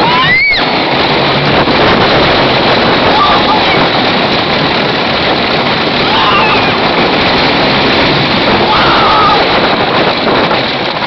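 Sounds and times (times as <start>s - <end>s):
roller coaster train on track: 0.0s - 11.0s
wind over microphone: 0.0s - 11.0s
faint voices: 3.0s - 4.2s.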